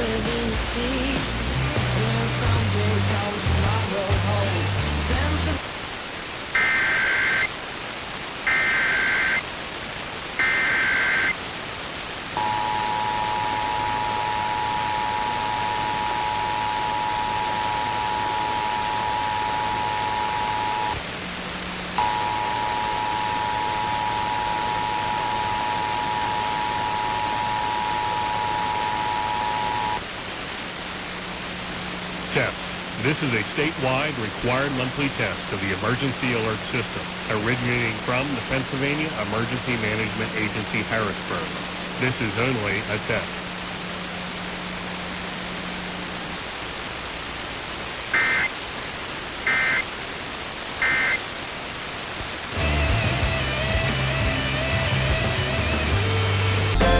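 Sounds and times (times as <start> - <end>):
music: 0.0 - 5.6, 52.6 - 56.9
radio static: 0.0 - 56.9
low steady hum: 10.4 - 56.9
two-tone alert signal: 12.4 - 21.0, 22.0 - 30.0.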